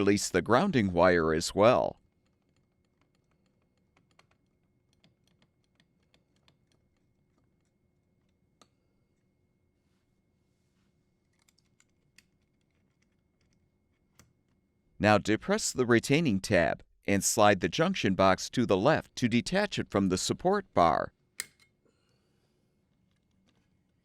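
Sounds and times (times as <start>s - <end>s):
small clicks and ticks: 2.0s - 8.7s.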